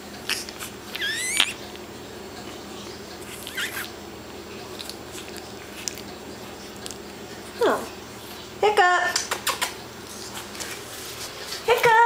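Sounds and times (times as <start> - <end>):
puppy whining: 0.2 - 4.0.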